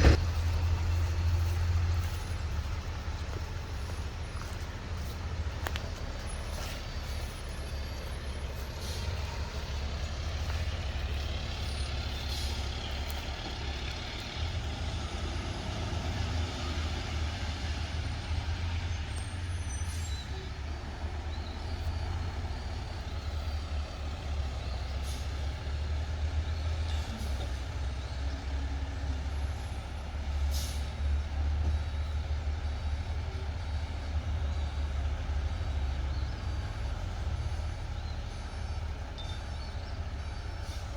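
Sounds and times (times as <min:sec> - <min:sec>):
diesel truck engine running: 0:00.0 - 0:40.9
air brake hisses: 0:30.5 - 0:30.9
faint reversing beeps: 0:35.9 - 0:40.9.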